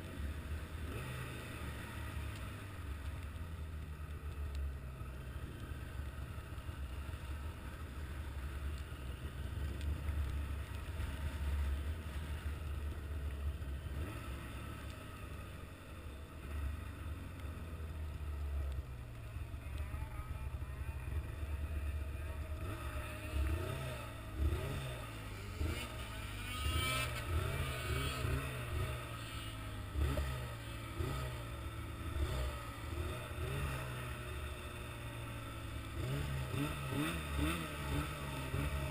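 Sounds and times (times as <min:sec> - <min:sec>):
vehicle engine rumbling and revving: 0:00.0 - 0:38.9.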